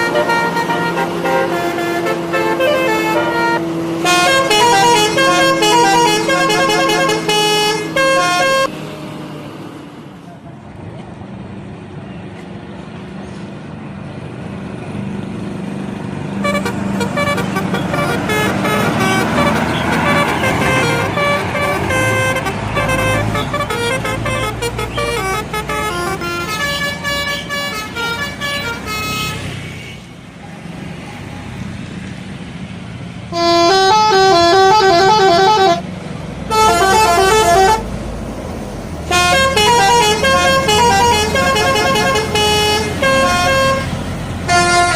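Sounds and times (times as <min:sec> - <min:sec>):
multi-note musical bus horn: 0:00.0 - 0:08.8, 0:16.4 - 0:30.1, 0:33.3 - 0:38.0, 0:39.1 - 0:44.9
bus engine running: 0:00.0 - 0:44.9.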